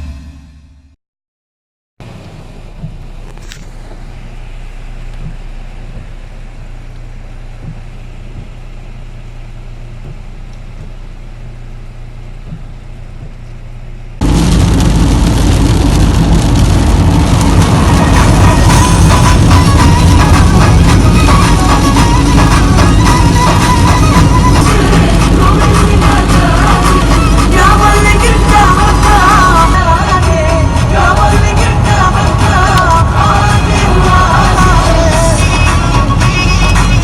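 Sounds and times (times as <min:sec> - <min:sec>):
low traffic rumble: 0:02.0 - 0:37.0
rain hissing: 0:14.2 - 0:36.0
loud music: 0:14.2 - 0:37.0.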